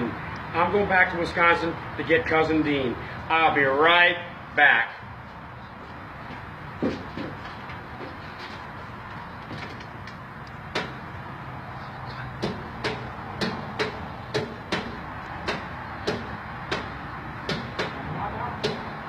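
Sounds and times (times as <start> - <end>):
sharp knocks and clicks: 9.4 - 11.0, 12.4 - 18.0, 18.6 - 19.0.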